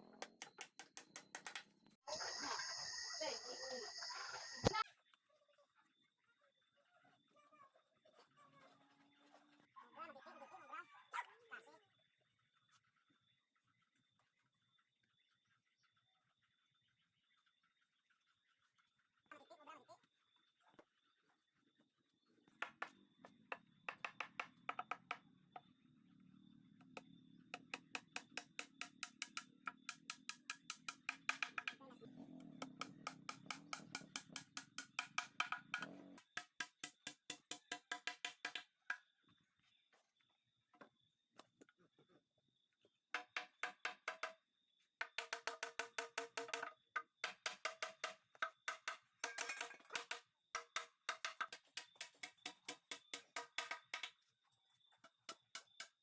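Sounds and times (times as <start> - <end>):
music with wood block percussion: 32.6 - 38.6, 45.0 - 54.1.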